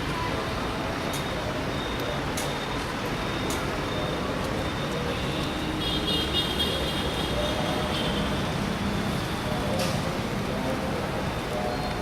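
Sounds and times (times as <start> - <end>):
road traffic: 0.0 - 12.0.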